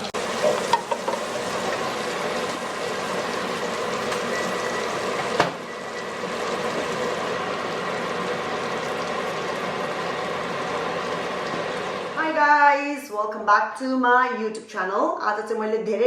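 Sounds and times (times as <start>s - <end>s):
pork sizzling in a pan: 0.0s - 12.3s.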